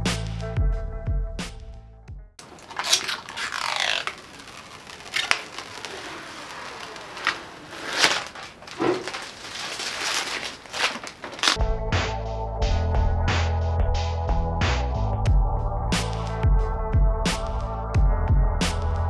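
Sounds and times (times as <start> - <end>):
packaging rustling and scraping: 2.4 - 11.6.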